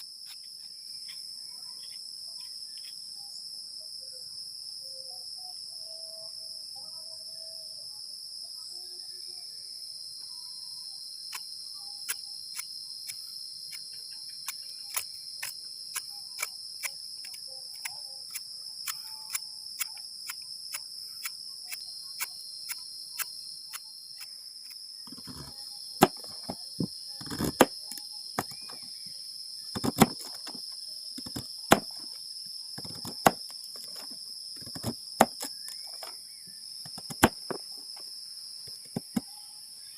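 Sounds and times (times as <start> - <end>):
crickets and insects chirring: 0.0 - 39.9.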